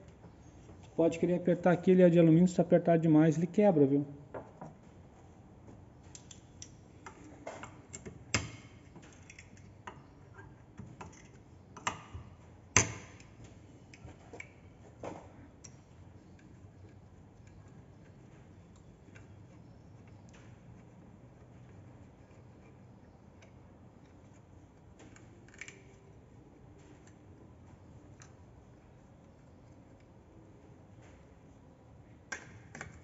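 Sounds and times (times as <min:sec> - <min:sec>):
metallic clicks and knocks of tools: 0:06.1 - 0:10.1.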